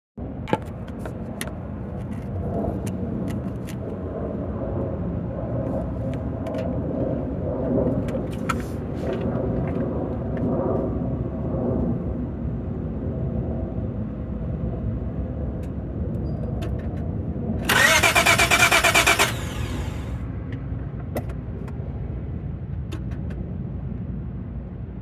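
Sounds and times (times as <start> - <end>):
engine cranking without starting: 17.6 - 20.2
sharp clicks: 17.7 - 20.2.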